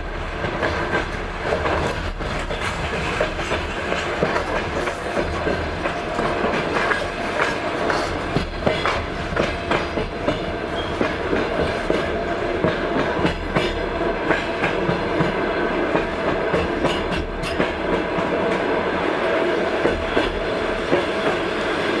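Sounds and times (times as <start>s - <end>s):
train wheels clattering over rails: 0.0s - 22.0s.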